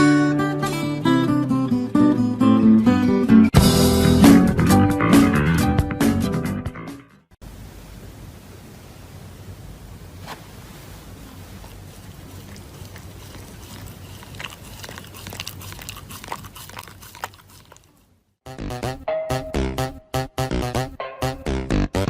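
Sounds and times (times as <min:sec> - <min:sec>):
animal chewing and crunching: 0:11.0 - 0:18.2.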